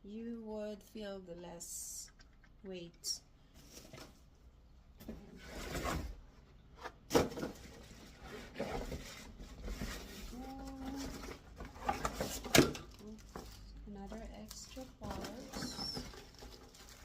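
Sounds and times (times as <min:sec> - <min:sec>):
packaging rustling: 0:07.6 - 0:17.0.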